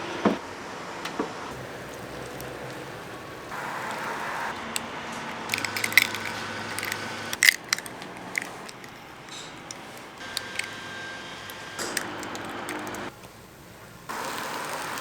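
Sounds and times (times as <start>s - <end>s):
sharp clicks and clinks: 4.7s - 13.1s.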